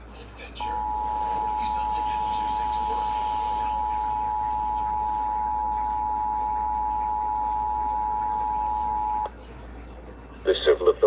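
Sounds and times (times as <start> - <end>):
two-tone alert signal: 0.6 - 9.3.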